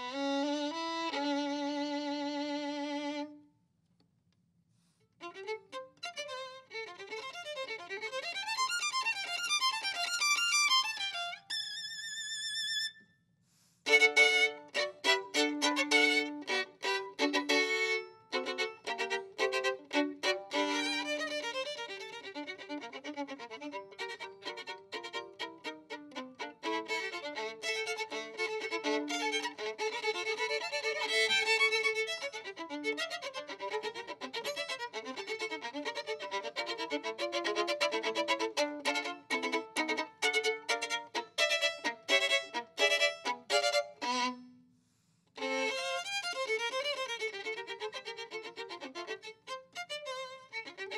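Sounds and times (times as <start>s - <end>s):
solo violin fast bowed notes: 0.0s - 3.4s, 5.2s - 13.0s, 13.8s - 44.5s, 45.4s - 50.9s.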